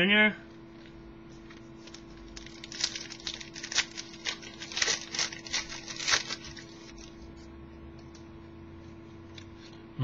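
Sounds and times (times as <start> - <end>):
card pack wrapper crackling: 1.8 - 7.1.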